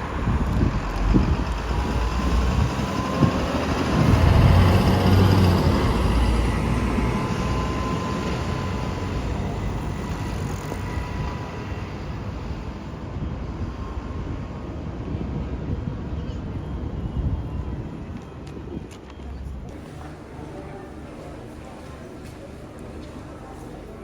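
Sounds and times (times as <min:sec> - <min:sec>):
large vehicle passing: 0:00.0 - 0:13.0
vehicle whine: 0:00.0 - 0:24.0.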